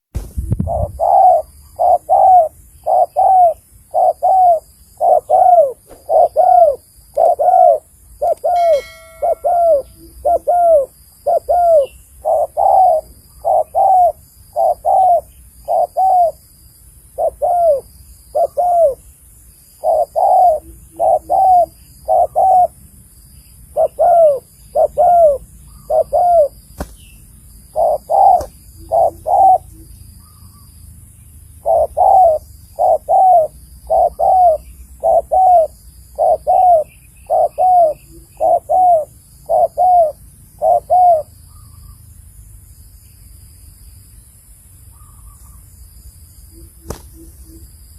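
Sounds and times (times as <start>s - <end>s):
dove cooing: 0.6s - 16.4s, 17.2s - 19.0s, 19.8s - 22.8s, 23.7s - 26.6s, 27.7s - 30.7s, 31.6s - 42.0s
faint high peeps: 8.4s - 10.9s.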